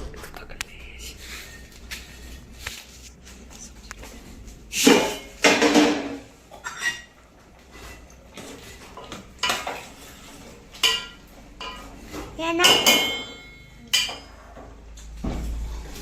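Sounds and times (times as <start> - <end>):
metal pots and utensils clattering: 4.2 - 16.0.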